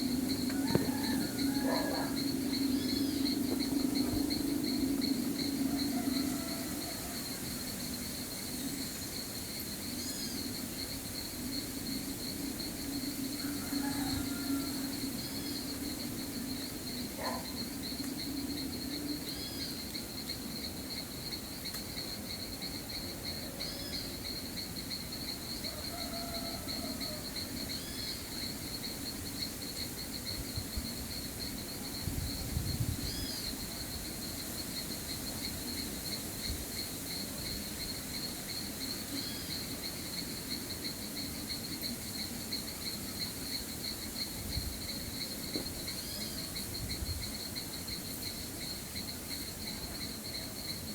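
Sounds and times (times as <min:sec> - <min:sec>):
insects trilling: 0:00.0 - 0:50.9.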